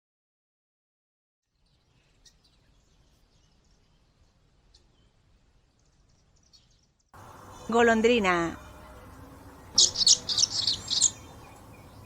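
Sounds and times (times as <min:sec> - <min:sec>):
faint outdoor ambience: 0:01.5 - 0:12.0
high bird chirps: 0:05.9 - 0:12.0.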